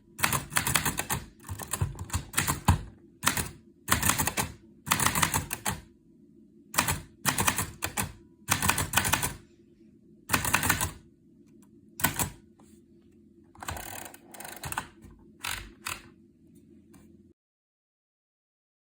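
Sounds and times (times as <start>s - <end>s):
manual typewriter keystrokes: 0.2s - 5.9s, 6.8s - 9.4s, 10.3s - 11.0s, 12.0s - 12.4s, 13.6s - 16.1s.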